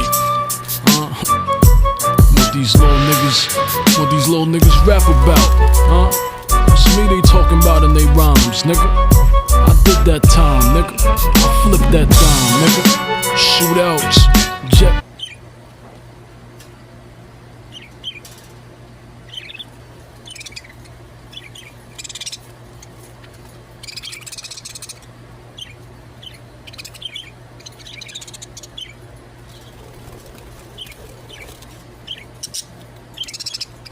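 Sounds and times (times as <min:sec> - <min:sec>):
budgerigars chirping and chattering: 0:15.2 - 0:15.4, 0:17.7 - 0:18.4, 0:19.2 - 0:23.0, 0:23.8 - 0:33.9.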